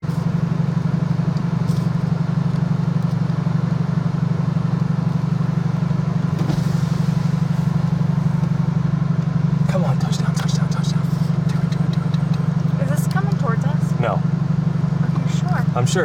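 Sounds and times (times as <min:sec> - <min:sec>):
car engine drone from inside cabin: 0:00.0 - 0:16.0.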